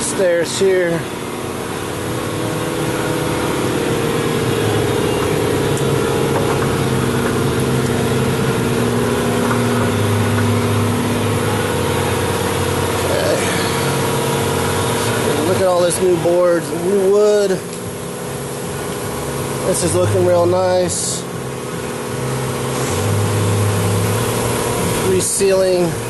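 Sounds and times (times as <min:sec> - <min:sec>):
motor droning hum: 0:00.0 - 0:26.0.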